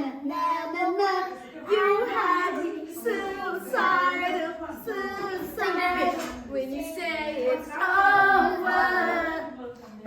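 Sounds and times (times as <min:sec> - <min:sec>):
child singing: 0:00.0 - 0:09.6.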